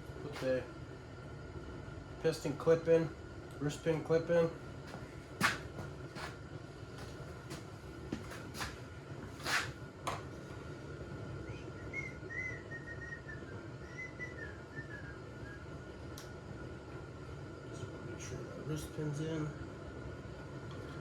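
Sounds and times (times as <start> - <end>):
steady shop hum: 0.0 - 21.0
faint wavering whistling: 11.4 - 15.8.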